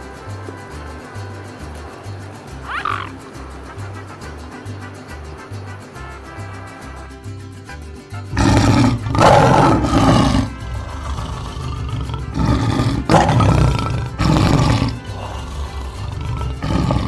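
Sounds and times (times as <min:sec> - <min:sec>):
background music: 0:00.0 - 0:17.0
big cat roaring: 0:02.6 - 0:03.3, 0:08.4 - 0:17.0.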